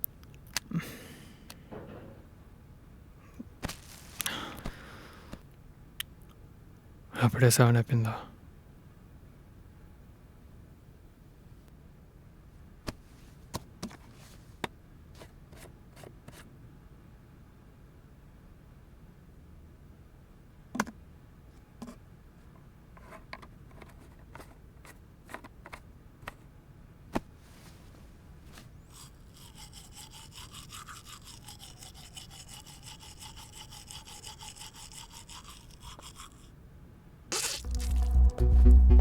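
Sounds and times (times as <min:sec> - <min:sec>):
back-and-forth scrubbing: 0:27.6 - 0:36.5, 0:37.3 - 0:39.0.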